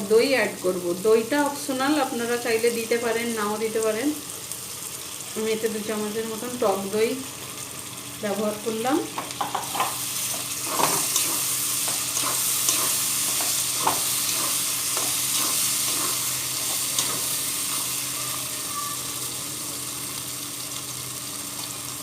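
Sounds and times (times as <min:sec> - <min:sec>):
curry sizzling in oil: 0:00.0 - 0:22.0
spoon stirring and scraping pan: 0:09.2 - 0:19.0.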